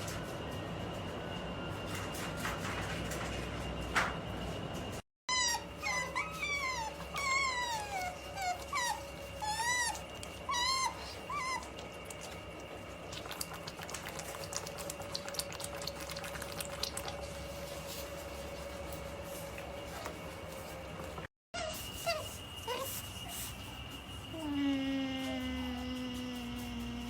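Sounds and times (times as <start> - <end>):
otter whining squeaks: 5.3 - 11.8, 21.6 - 23.8.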